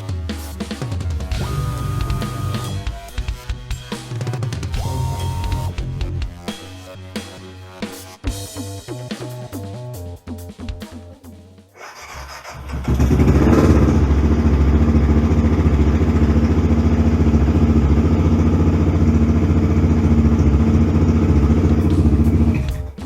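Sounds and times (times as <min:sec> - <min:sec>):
motorcycle engine starting and idling: 0:11.8 - 0:23.0.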